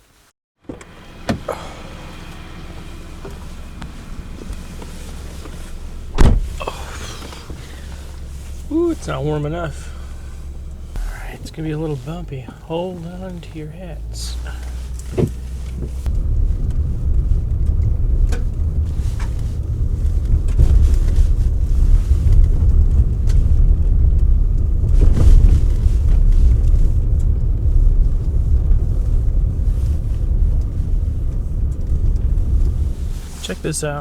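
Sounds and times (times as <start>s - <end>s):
truck engine and tyres rumbling: 0.1s - 34.0s
truck knocks over bumps: 0.7s - 2.1s, 3.8s - 8.1s, 14.4s - 32.9s.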